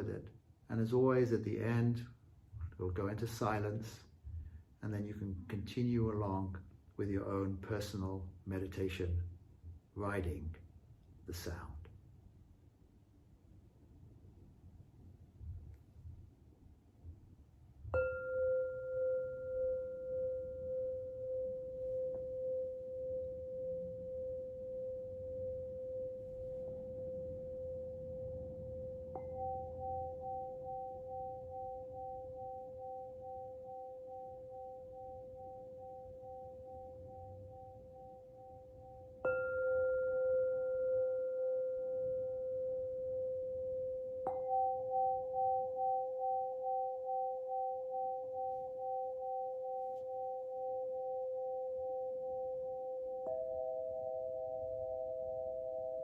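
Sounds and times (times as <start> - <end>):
crystal lyre ringing tone: 17.9 - 56.0.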